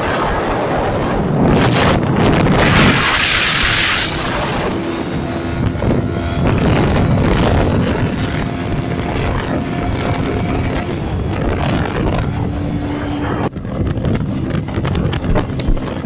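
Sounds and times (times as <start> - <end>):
hissing rush: 0.0 - 6.5
two-stroke motorcycle engine running: 4.7 - 16.0.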